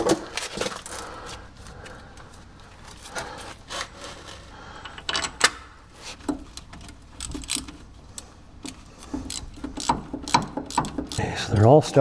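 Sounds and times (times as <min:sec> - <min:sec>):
metal bolts clicking and scraping: 0:04.8 - 0:05.6, 0:06.2 - 0:11.2.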